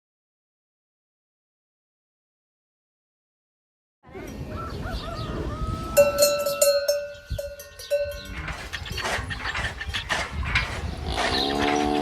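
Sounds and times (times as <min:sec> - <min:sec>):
outdoor ambience: 0:04.0 - 0:12.0.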